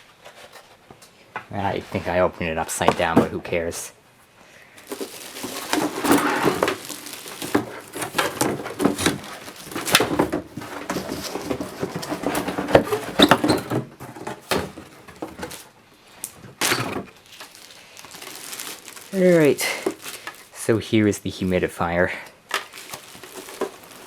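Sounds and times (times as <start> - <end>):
cardboard box rustling and scraping: 4.8 - 15.7, 16.6 - 20.6, 22.6 - 24.0.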